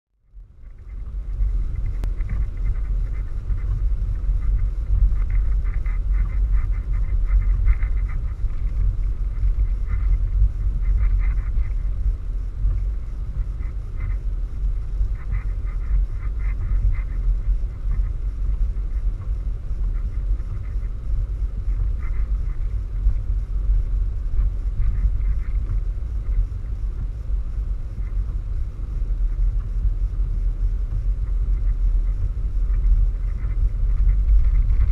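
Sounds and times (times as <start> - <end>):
wind buffeting microphone: 0.3 - 34.9
faint high ticks: 0.4 - 3.0.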